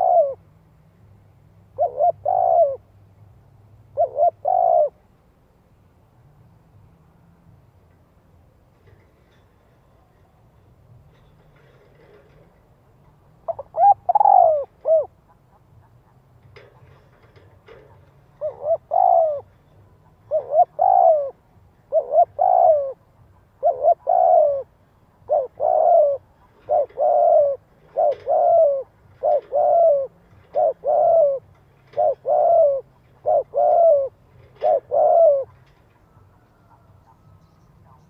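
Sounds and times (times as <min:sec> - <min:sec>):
dove cooing: 0:00.0 - 0:00.4, 0:01.7 - 0:02.9, 0:03.9 - 0:05.0, 0:13.4 - 0:38.0.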